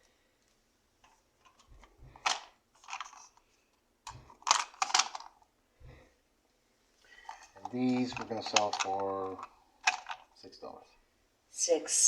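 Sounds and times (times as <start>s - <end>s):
plastic toys clicking and knocking: 1.0s - 5.5s, 7.2s - 10.5s.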